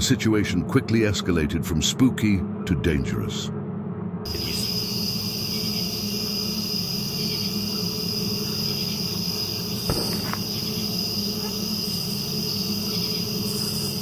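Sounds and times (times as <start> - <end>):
crickets chirping: 4.3 - 14.0
distant gunshot: 9.8 - 11.0.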